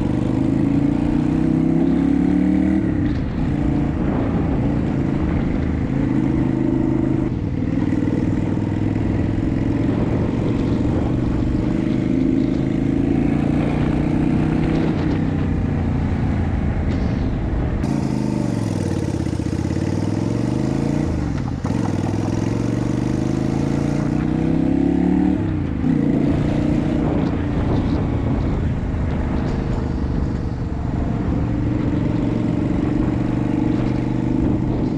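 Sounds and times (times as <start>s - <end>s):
motorcycle engine riding: 0.0s - 34.9s
wind noise on microphone: 0.0s - 34.9s.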